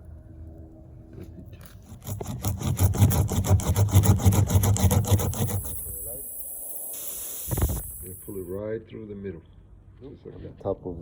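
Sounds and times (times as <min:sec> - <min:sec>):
reamer rasping in tire rubber: 0:01.8 - 0:08.6.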